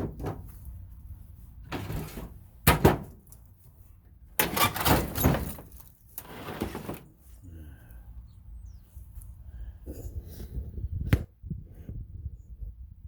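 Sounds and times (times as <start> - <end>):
sheet metal clanking and scraping: 4.4 - 7.1.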